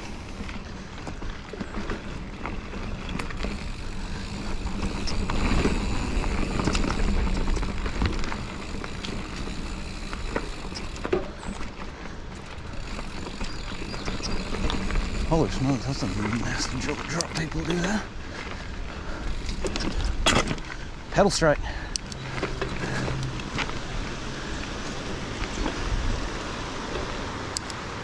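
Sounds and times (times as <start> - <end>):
bike clicks and rattles: 0.0 - 28.0
bike tyres on dirt: 0.0 - 28.0
wind rumble on microphone: 22.6 - 27.3.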